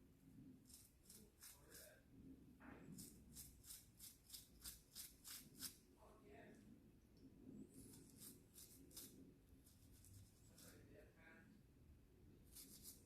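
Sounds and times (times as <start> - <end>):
faint rubbing strokes: 7.4 - 11.5, 12.4 - 13.0.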